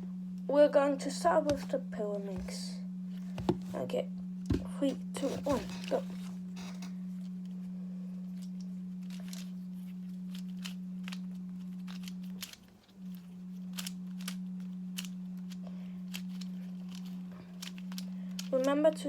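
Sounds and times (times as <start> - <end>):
low hum: 0.0 - 19.0
plastic puzzle clicking: 9.2 - 9.5, 11.8 - 12.6, 13.7 - 14.4, 15.0 - 18.8.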